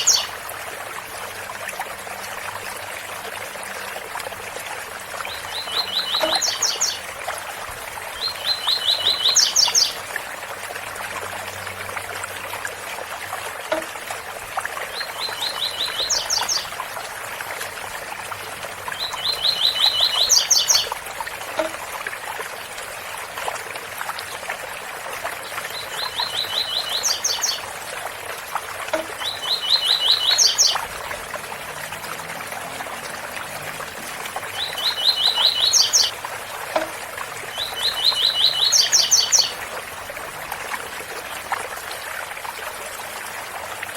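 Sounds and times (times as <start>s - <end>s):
waterfall rushing: 28.5s - 37.6s.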